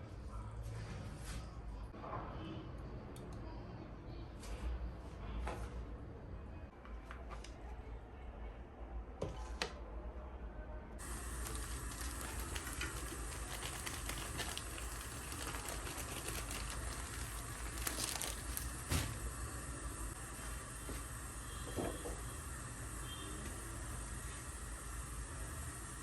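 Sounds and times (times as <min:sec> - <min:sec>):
chicken frying in hot oil: 0:11.0 - 0:26.0.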